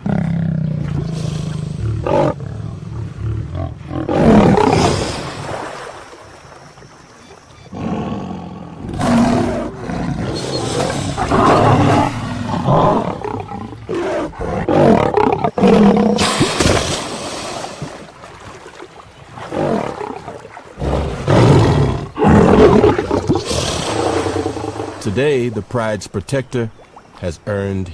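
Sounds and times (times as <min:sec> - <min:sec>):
lion roaring and growling: 0:00.0 - 0:05.1, 0:07.7 - 0:17.0, 0:19.4 - 0:25.0.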